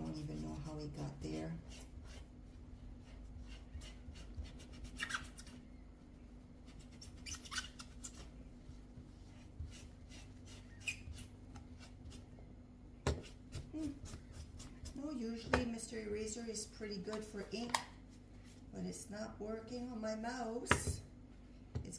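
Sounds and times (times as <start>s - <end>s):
high squeaks: 7.0s - 8.2s.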